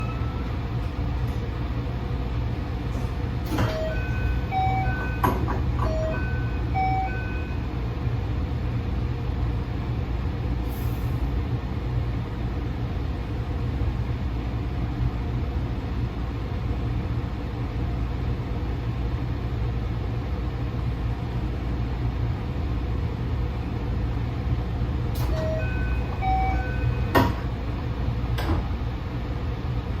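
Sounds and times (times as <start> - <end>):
train door chime: 0.0 - 1.4, 3.4 - 7.7, 25.2 - 27.6
low hum of train car: 0.0 - 30.0.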